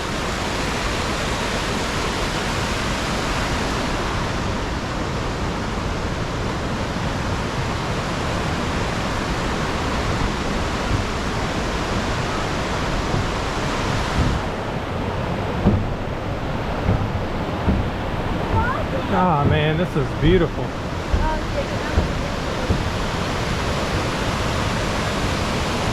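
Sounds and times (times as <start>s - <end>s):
white water rushing: 0.0s - 25.9s.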